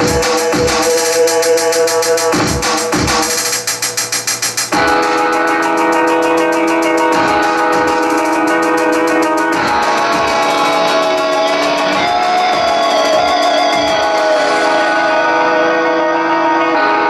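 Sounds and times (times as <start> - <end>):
hi-hat beat: 0.0 - 15.7
rock band playing live: 4.8 - 15.9
lead guitar bending pitch: 4.8 - 17.0.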